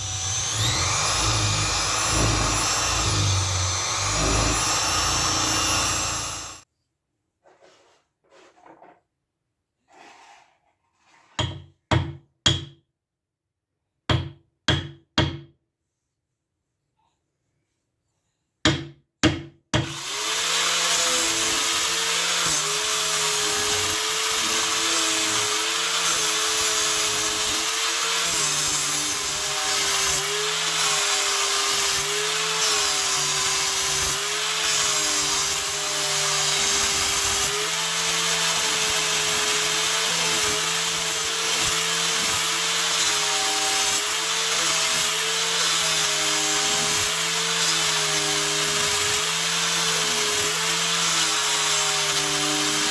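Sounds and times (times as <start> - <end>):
electric power tool running: 0.0 - 6.6, 19.9 - 27.8.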